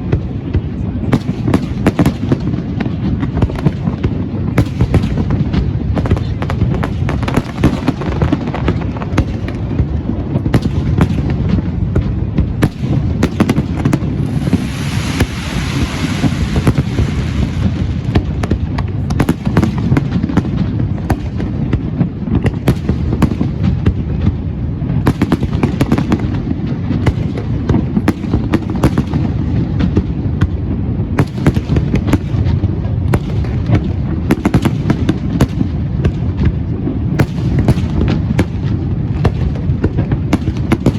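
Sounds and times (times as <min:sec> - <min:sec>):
fireworks booming and banging: 0:00.0 - 0:40.9
hissing crackle: 0:13.6 - 0:19.1.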